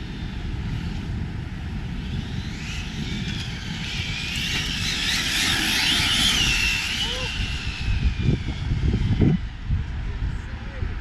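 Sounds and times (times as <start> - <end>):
electric motor whining: 3.4 - 9.4.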